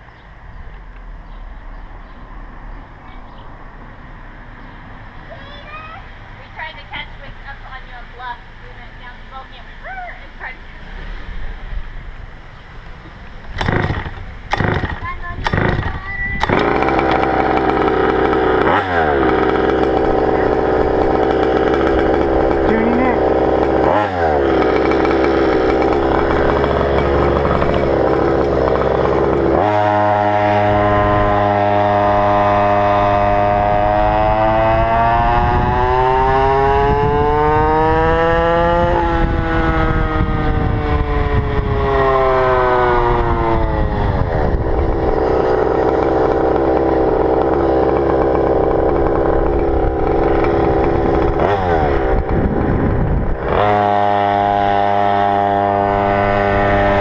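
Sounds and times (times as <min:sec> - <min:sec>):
two-stroke engine running hard: 0:13.5 - 0:57.0.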